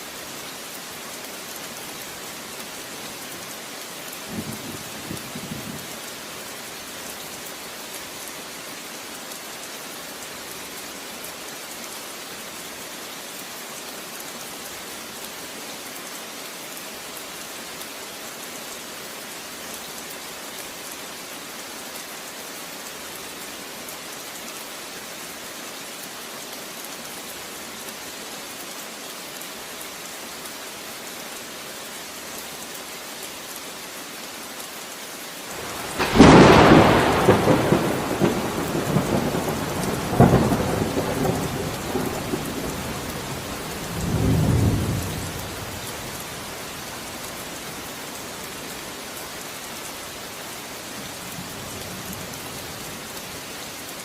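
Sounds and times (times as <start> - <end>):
rain hiss: 0.0 - 54.0
thunderclap rumbling: 35.6 - 42.8.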